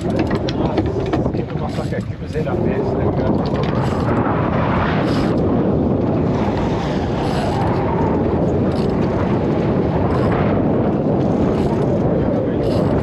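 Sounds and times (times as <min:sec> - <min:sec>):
boat noise: 0:00.0 - 0:13.0
water washing: 0:00.0 - 0:13.0
wind rushing over microphone: 0:00.0 - 0:13.0.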